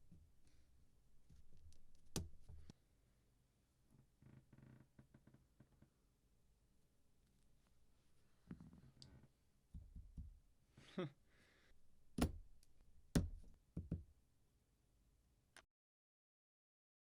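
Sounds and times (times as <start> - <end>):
keyboard parts knocking and clicking: 13.2 - 14.1.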